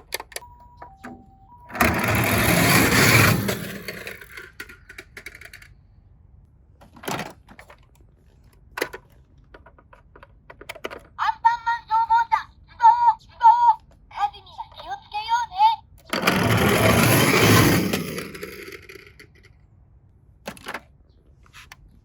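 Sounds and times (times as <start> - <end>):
toy cars clattering down plastic slide: 1.8 - 5.8, 16.1 - 19.6.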